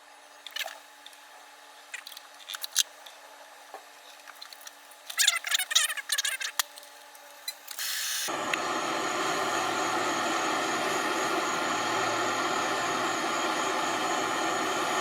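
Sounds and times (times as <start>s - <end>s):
gas hiss: 7.8s - 15.0s
torch flame roaring: 8.3s - 15.0s.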